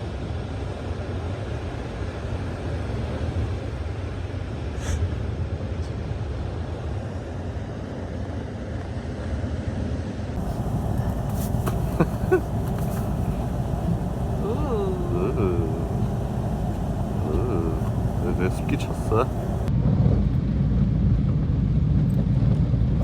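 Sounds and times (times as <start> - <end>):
faint clicks: 10.4 - 14.4
car cabin road rumble: 10.4 - 19.7.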